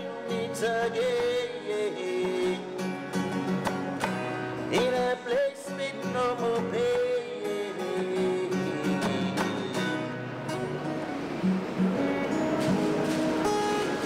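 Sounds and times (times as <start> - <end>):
man singing: 0.0 - 3.4, 4.6 - 10.2
strummed acoustic guitar: 0.0 - 14.0.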